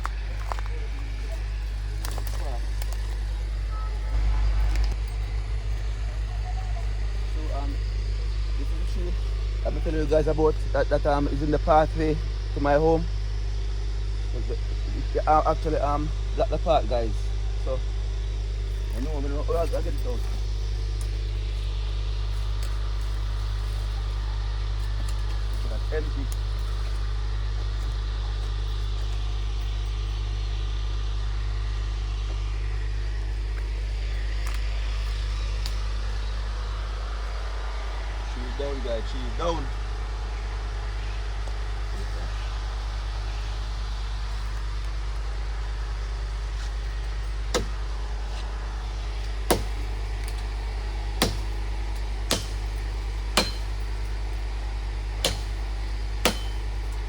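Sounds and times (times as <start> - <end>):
low engine hum: 0.0 - 15.6
steady low hum: 0.0 - 57.0
sharp knocks: 52.3 - 52.6, 53.4 - 53.8, 55.2 - 55.5, 56.2 - 56.7.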